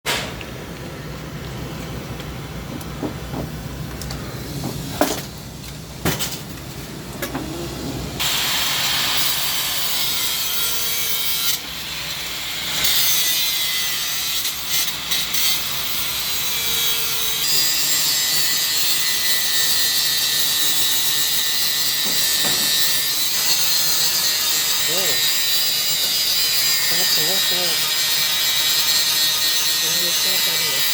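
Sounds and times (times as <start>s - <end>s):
knocks: 2.7s - 3.6s
angle grinder grinding metal: 8.2s - 30.9s.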